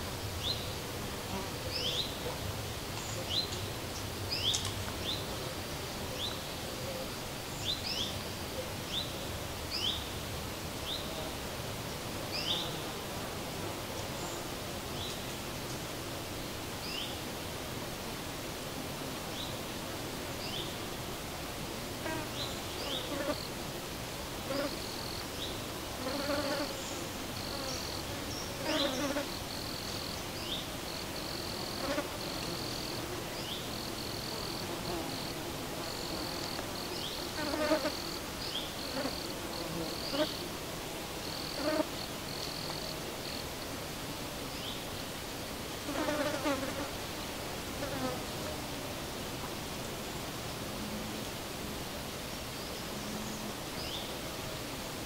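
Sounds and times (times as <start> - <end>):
steady outdoor hiss: 0.0 - 55.0
flying insect buzzing: 24.5 - 25.2, 26.0 - 30.2, 30.9 - 40.4, 41.3 - 43.4, 45.8 - 47.1.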